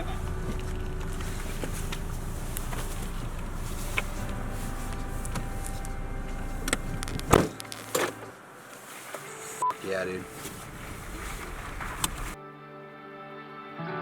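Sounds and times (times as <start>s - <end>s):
car engine hum: 0.0s - 12.4s
sharp clunks: 6.7s - 8.3s.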